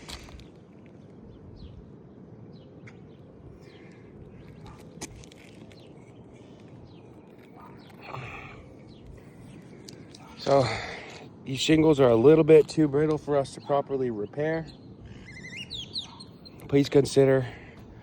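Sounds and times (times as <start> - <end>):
faint bird chirps: 14.6 - 16.8.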